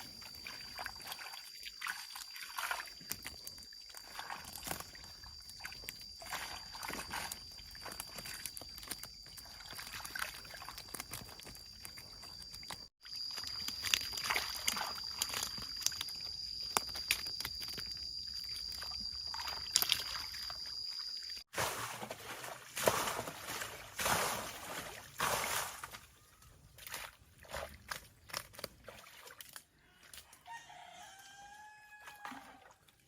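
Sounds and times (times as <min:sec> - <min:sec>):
water sloshing and splashing: 0:00.0 - 0:30.4, 0:32.0 - 0:33.0
high-pitched insect drone: 0:13.1 - 0:21.4.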